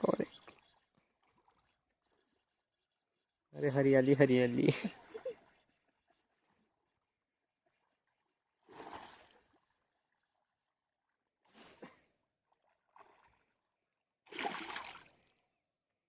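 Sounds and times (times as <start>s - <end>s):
splashes in water: 14.3s - 15.3s.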